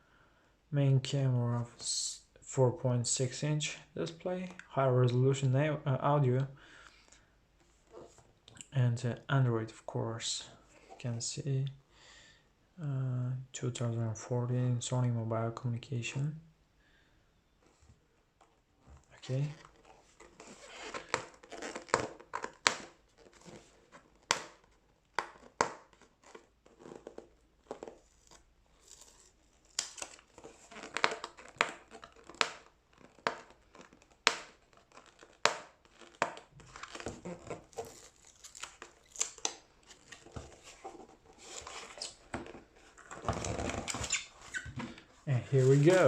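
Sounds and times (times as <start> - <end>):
packaging crinkling and tearing: 19.5 - 44.6.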